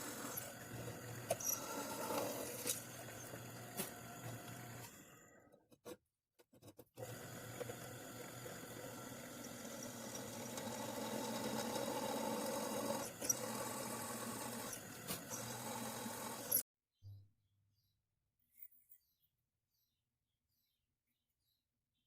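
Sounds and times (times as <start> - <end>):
electric drill boring steel: 0.0 - 5.2, 7.0 - 16.6.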